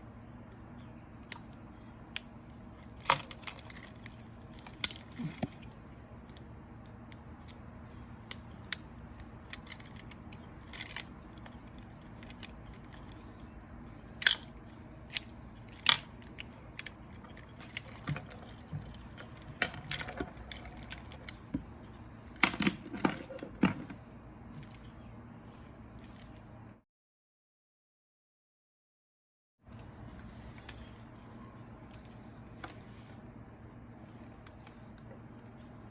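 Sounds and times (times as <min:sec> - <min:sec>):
small parts and tools clattering: 0:02.7 - 0:06.9, 0:08.6 - 0:13.2, 0:15.1 - 0:24.9.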